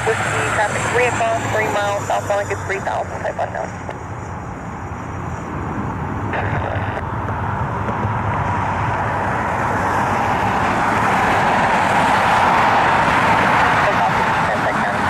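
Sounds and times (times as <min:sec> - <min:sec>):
jet engine roar: 0:00.0 - 0:15.0.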